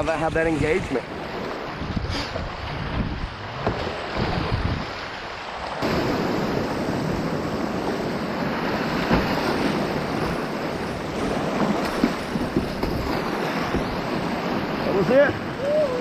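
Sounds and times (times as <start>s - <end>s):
whitewater rushing: 3.4s - 16.0s.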